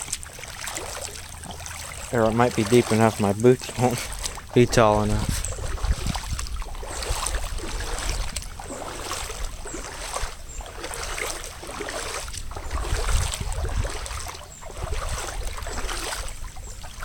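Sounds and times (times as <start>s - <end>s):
boots sloshing through water: 0.0s - 17.0s.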